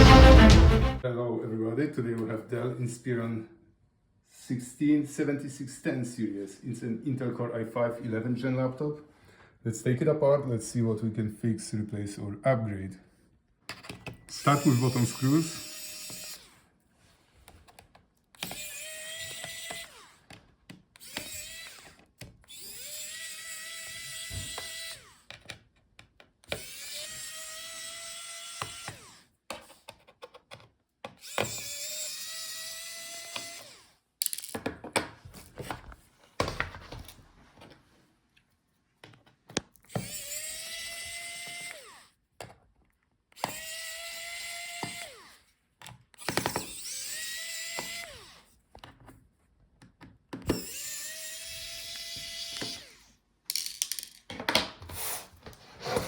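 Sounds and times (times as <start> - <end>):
electric screwdriver whine: 14.3 - 16.6, 18.4 - 20.2, 21.0 - 25.2, 26.5 - 29.2, 31.2 - 33.9, 39.9 - 42.1, 43.4 - 45.4, 46.2 - 48.5, 50.5 - 53.1.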